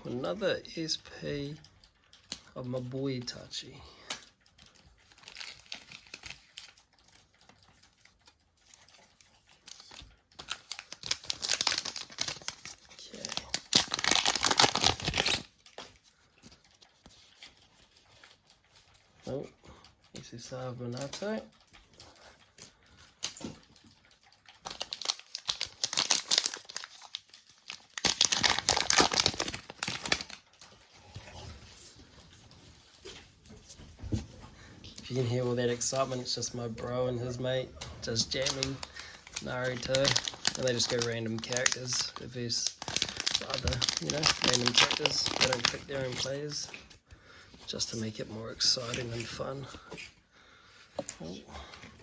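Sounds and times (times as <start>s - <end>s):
card pack wrapper crinkling: 5.1s - 7.4s, 8.1s - 18.8s, 24.5s - 31.0s, 35.0s - 49.9s.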